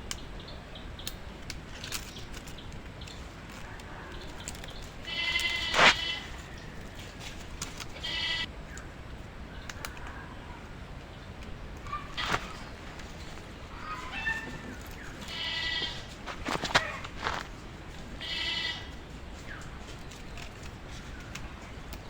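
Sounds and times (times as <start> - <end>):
animal bleating: 5.0 - 6.6, 7.9 - 8.5, 13.7 - 17.5, 18.2 - 19.0.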